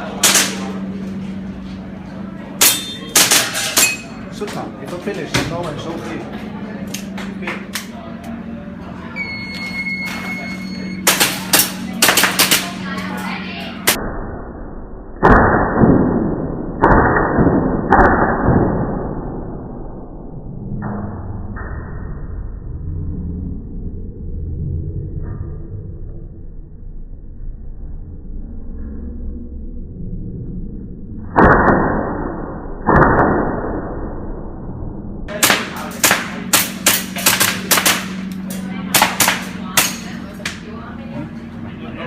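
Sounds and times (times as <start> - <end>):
airsoft pistol shots: 0.2 - 0.7, 2.6 - 4.0, 11.0 - 12.8, 35.3 - 38.2, 38.9 - 40.0.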